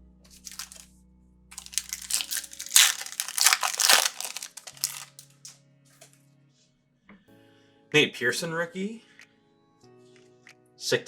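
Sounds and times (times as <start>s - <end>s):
foil wrapper crinkling and tearing: 0.4s - 0.8s, 1.6s - 5.5s.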